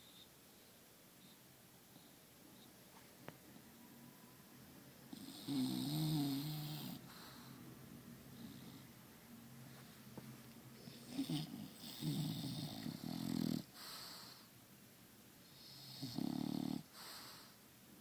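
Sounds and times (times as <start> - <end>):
dog snoring: 5.1 - 7.5, 10.8 - 14.4, 15.5 - 17.6
dog breathing: 6.3 - 7.7.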